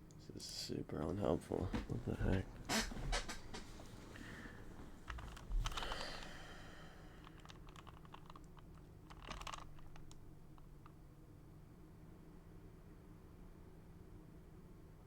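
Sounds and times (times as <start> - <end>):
puzzle cube plastic clicking: 5.0 - 11.0.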